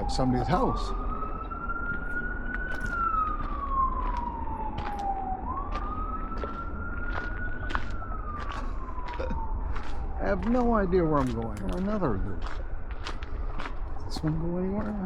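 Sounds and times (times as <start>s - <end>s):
emergency siren wailing: 0.0s - 15.0s.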